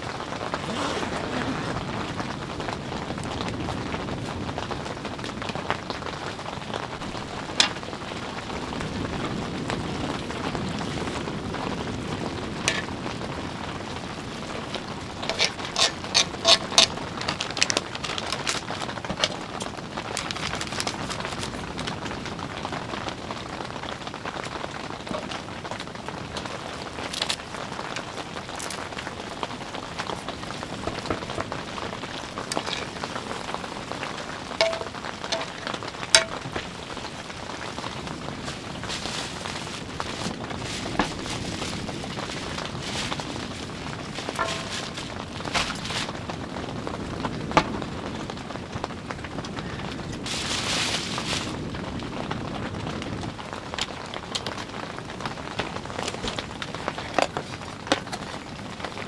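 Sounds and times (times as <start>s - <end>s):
rain pattering: 0.0s - 59.0s
sharp clicks and knocks: 34.6s - 35.6s, 36.2s - 36.6s.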